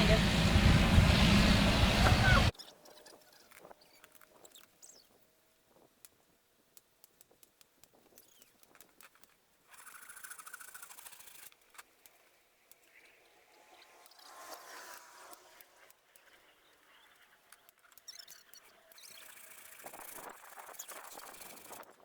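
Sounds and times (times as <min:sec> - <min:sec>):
rasping buzz: 0:00.0 - 0:02.5
faint clicks: 0:03.0 - 0:22.0.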